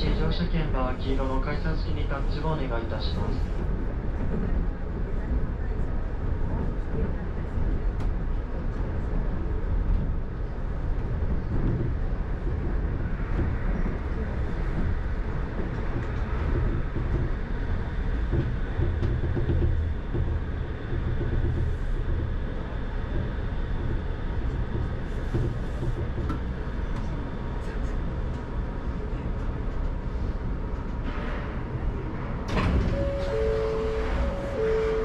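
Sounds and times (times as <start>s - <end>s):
monorail running rumble: 0.0s - 35.0s
two-note alternating tone: 32.9s - 35.0s.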